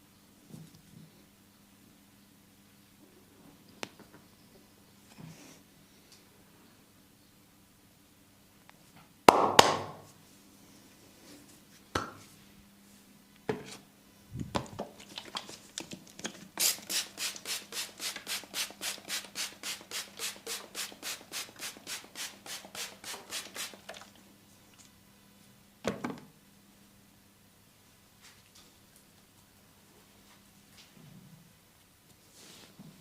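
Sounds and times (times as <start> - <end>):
hands rubbing over skin: 16.6 - 24.1.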